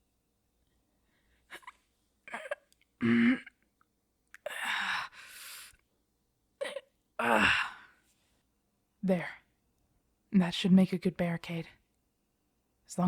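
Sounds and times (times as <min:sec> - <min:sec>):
woman grunting with effort: 0:06.6 - 0:07.8.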